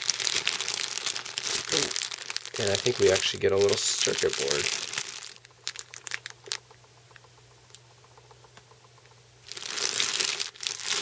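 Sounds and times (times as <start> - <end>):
plastic bags crinkling: 0.0 - 6.7, 9.4 - 11.0
low steady hum: 0.0 - 11.0.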